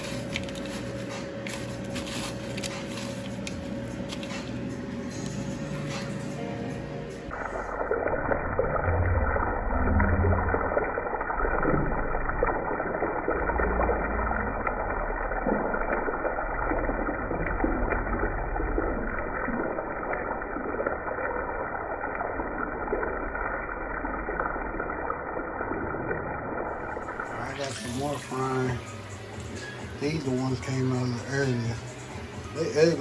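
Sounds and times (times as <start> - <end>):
food deep-frying in oil: 7.4 - 28.7.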